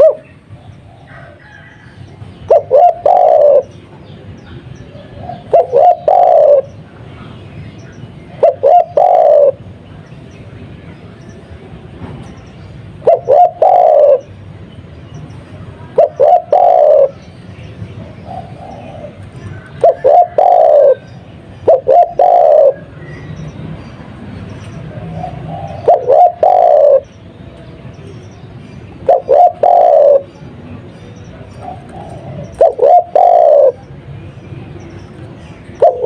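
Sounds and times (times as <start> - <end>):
dove cooing: 0.0 - 1.8, 2.4 - 3.8, 4.9 - 6.8, 8.3 - 9.7, 13.0 - 14.4, 15.9 - 17.2, 18.1 - 23.0, 25.0 - 27.1, 29.0 - 30.4, 31.3 - 33.9, 35.8 - 36.0.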